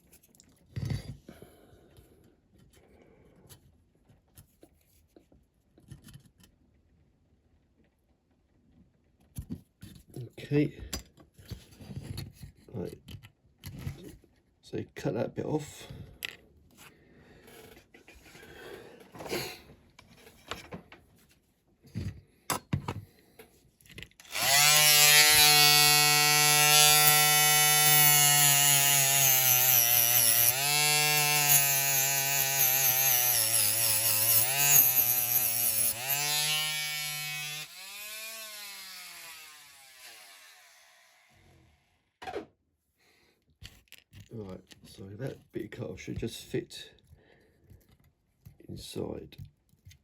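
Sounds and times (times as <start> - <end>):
electric rotary tool cutting: 24.2 - 41.9.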